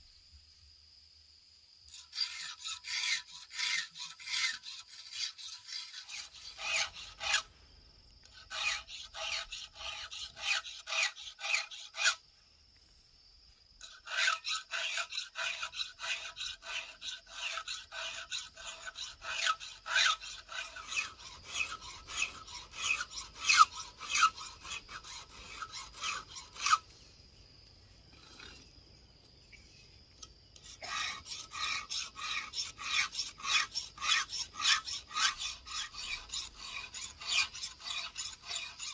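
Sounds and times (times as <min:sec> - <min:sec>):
file rasping on chainsaw chain: 0:01.9 - 0:07.5, 0:08.2 - 0:12.2, 0:13.8 - 0:26.9, 0:30.6 - 0:38.9.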